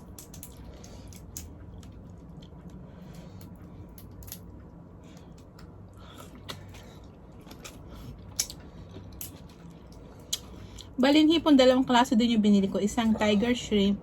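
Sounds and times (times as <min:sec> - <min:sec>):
chewing: 0:05.2 - 0:10.9.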